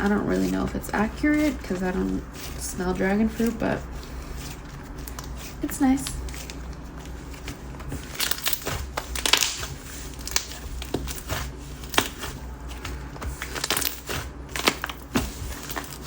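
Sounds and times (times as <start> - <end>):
slime crackling and popping: 8.0 - 12.4, 13.3 - 16.0.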